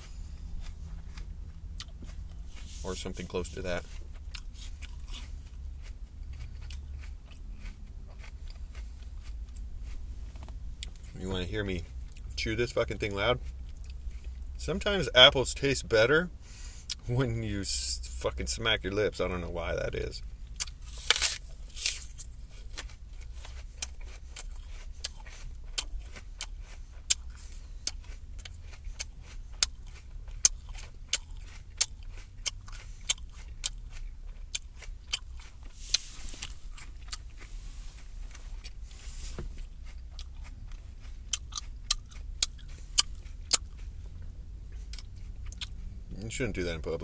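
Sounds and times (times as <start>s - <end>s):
low rumble: 0.0s - 23.4s
person chewing apple loudly: 0.0s - 47.0s.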